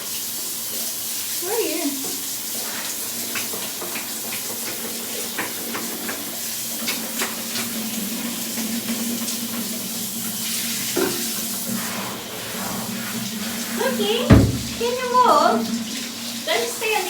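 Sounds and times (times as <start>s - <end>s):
shower water splashing: 0.0s - 17.0s.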